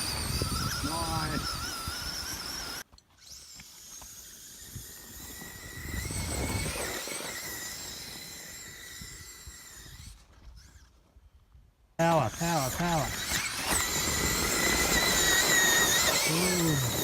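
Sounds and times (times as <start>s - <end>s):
rc car electric motor whining: 0.0s - 11.2s, 12.0s - 17.0s.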